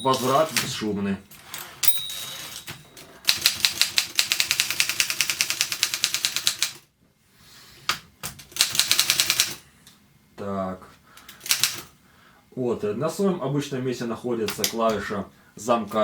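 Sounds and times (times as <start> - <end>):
typewriter keys clicking: 3.3 - 6.8, 8.2 - 9.6, 11.4 - 11.9.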